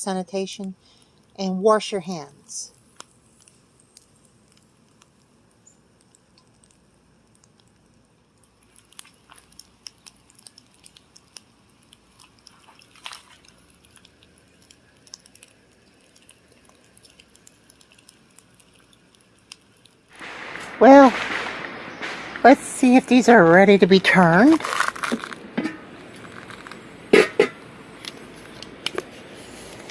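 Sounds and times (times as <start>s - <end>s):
fat crackling and popping on grill: 0.0s - 29.9s.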